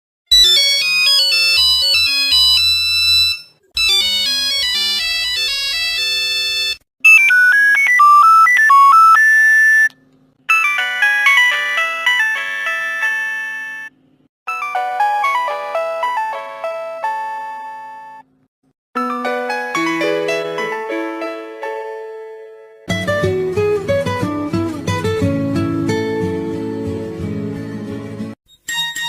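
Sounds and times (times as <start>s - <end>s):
mobile phone ringtones: 0.3s - 9.9s, 10.5s - 13.9s.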